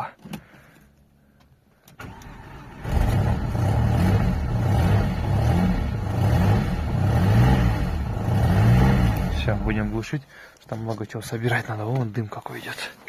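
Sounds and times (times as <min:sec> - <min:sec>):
car engine running unevenly: 0:02.0 - 0:10.0.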